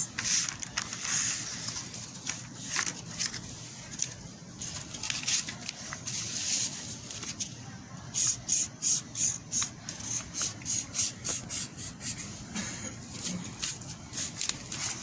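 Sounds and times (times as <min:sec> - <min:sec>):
crayon scribbling on paper: 0:08.2 - 0:12.5.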